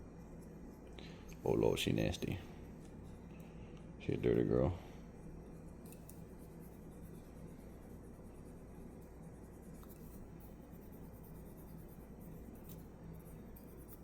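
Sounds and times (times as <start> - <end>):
cotton swab scratchy rubbing: 5.5 - 14.0.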